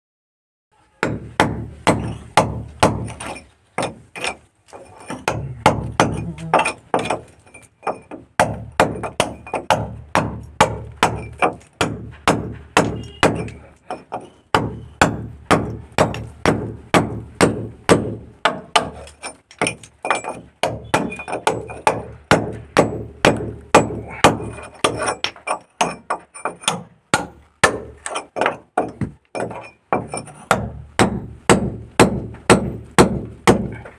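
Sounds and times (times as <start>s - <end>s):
hammer blows: 7.9s - 19.0s.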